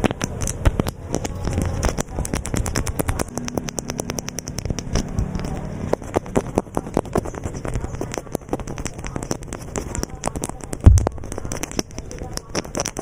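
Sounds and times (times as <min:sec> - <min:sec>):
small clicks taps and crackles: 0:00.0 - 0:13.0.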